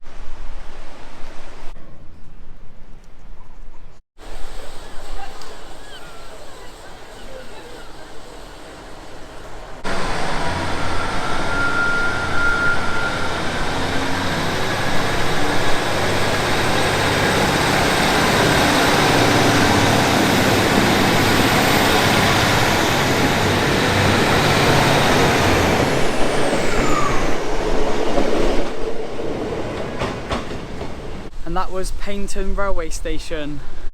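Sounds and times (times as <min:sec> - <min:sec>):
train running close by: 0:04.2 - 0:31.4
high whine falling in pitch: 0:09.8 - 0:27.5.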